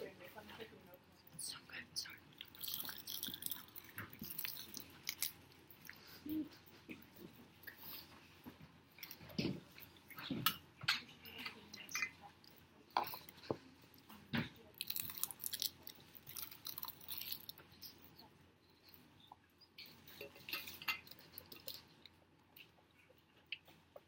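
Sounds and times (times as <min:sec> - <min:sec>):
chewing crisp snacks: 0:02.2 - 0:08.1, 0:11.2 - 0:24.0.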